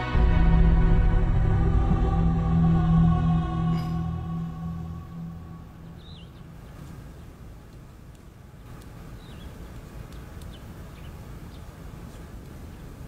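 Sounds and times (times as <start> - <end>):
low steady rumble: 0.0 - 13.0
bird chirps: 5.2 - 7.4, 8.7 - 12.3.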